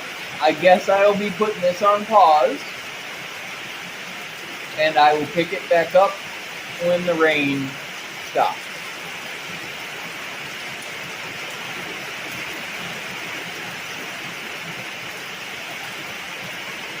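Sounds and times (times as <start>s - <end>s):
heavy rain drumming on a roof: 0.0s - 17.0s.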